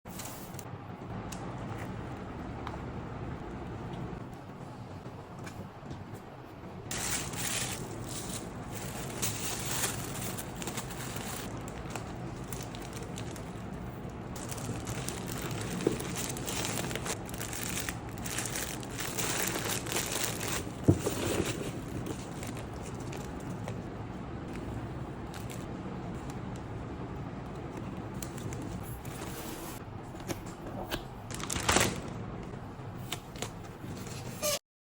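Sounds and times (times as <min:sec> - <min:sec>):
wrapping crinkling and rustling: 0:06.9 - 0:23.9, 0:24.5 - 0:26.6, 0:31.2 - 0:32.2.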